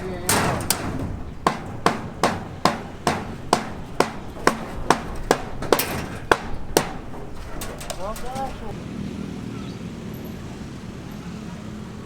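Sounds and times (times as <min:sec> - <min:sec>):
hammer striking with ringing blows: 0:00.1 - 0:08.8.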